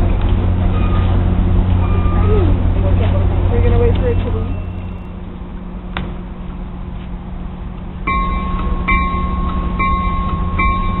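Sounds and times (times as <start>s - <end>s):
train engine rumble: 0.0s - 11.0s
bell ringing: 3.9s - 5.1s.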